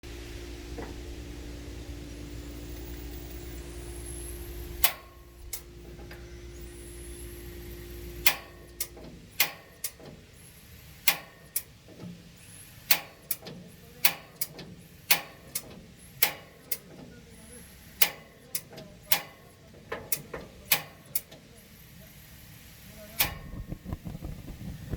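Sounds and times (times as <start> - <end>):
two-tone hum: 0.0 - 24.9
gas grill burner clicks and pops: 4.8 - 6.2, 8.1 - 10.3, 11.0 - 17.1, 18.0 - 21.5, 23.1 - 24.1.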